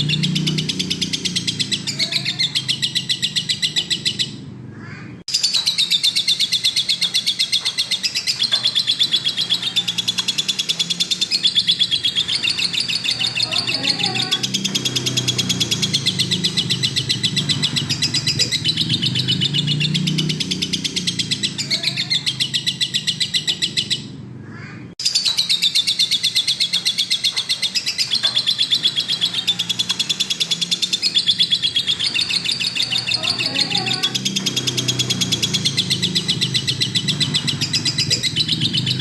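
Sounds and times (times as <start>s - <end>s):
lovebird chirping: 0.0s - 4.4s, 5.3s - 24.1s, 25.0s - 39.0s.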